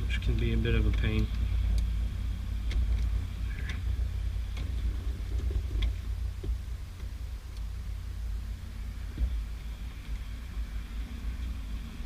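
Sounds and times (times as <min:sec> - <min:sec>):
low rumble: 0:00.0 - 0:12.0.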